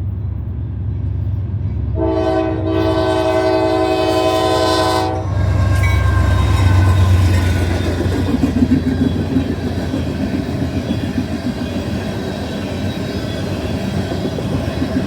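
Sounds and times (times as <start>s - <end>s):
train rumble: 0.0s - 15.0s
locomotive air horn blast: 2.0s - 5.6s.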